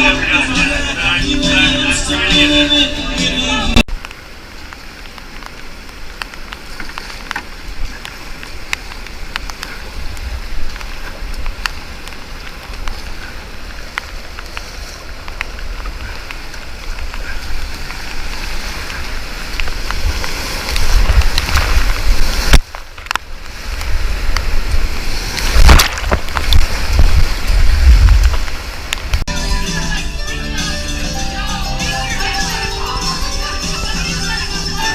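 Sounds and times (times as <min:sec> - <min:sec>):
whitewater rushing: 0:00.0 - 0:34.9
paddle strokes: 0:04.1 - 0:29.2
water striking camera: 0:25.3 - 0:29.2.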